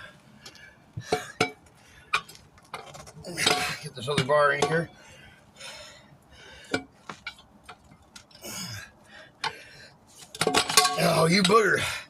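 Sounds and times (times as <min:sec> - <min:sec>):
tire irons clinking on rim: 0:00.4 - 0:05.1, 0:10.2 - 0:11.9
hard breath of effort: 0:04.9 - 0:06.9.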